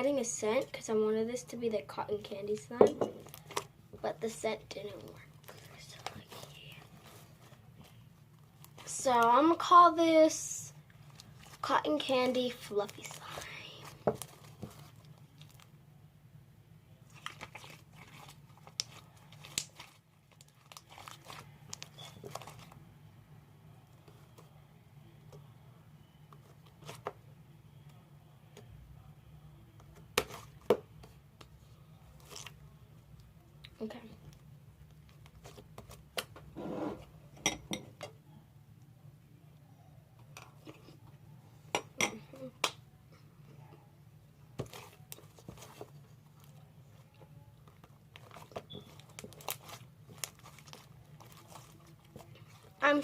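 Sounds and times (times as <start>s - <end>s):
slime squishing and crackling: 10.9s - 15.7s, 17.0s - 22.8s, 44.6s - 53.0s.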